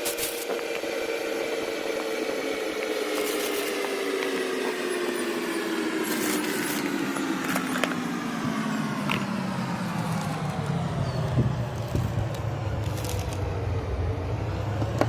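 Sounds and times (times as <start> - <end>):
spinning machine winding down: 0.0 - 15.0.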